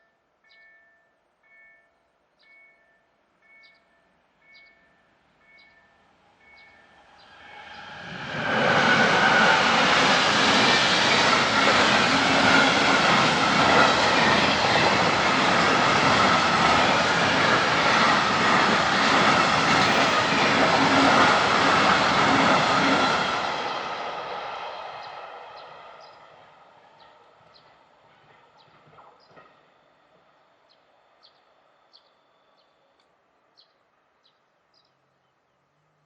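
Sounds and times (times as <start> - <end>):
train wheels rumbling on rails: 4.7 - 30.3.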